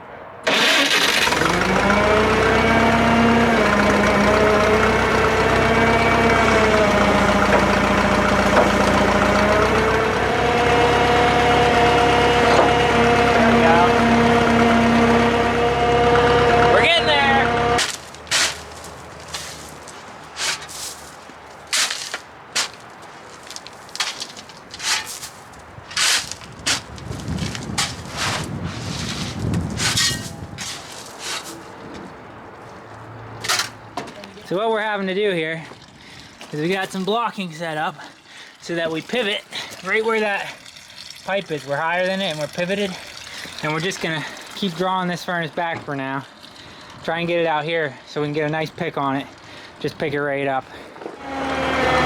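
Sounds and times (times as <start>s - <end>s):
crane engine running: 0.5s - 22.4s, 51.0s - 52.0s
short scuffs and rustles: 17.8s - 34.3s.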